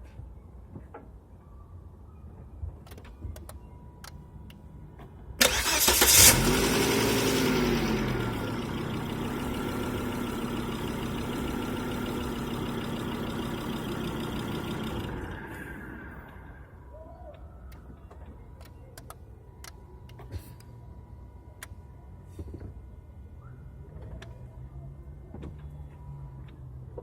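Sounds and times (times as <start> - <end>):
car engine starting and idling: 5.4 - 16.9.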